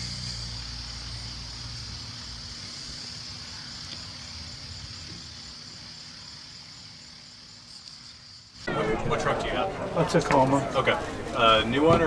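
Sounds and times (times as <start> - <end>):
motor vehicle low rumble: 0.0 - 3.6
steady high hiss: 0.0 - 9.6.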